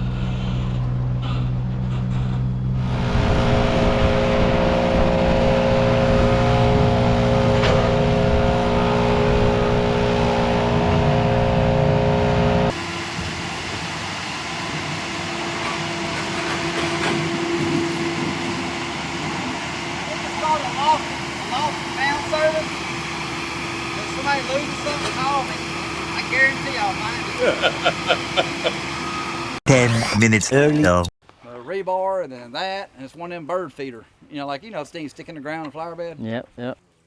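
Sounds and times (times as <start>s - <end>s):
quieter engine hum: 0.0s - 13.6s, 16.6s - 29.6s
large engine running: 0.0s - 29.6s.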